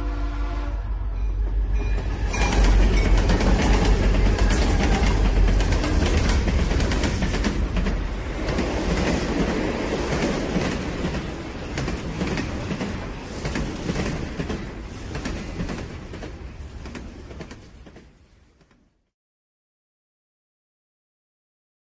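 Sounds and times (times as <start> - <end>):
rumbling and clattering noise: 0.9 - 18.1.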